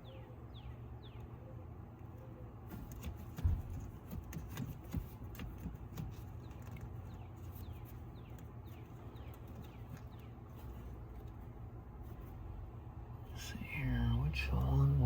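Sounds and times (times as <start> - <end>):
bird chirping: 0.0 - 1.6, 6.2 - 10.9.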